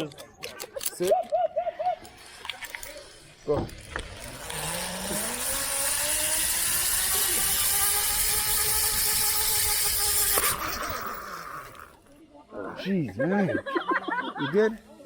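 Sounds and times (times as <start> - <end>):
zip-line pulleys whining on cable: 0.8 - 12.2.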